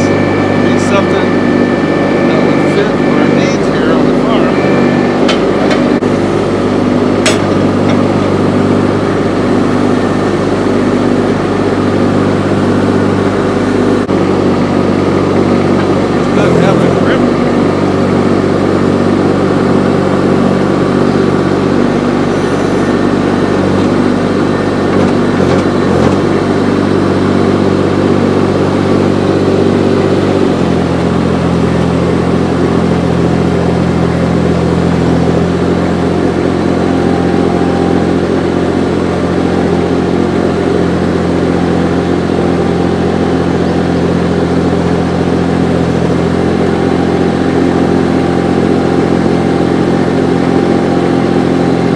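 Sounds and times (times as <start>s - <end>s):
track loader engine running: 0.0s - 51.9s.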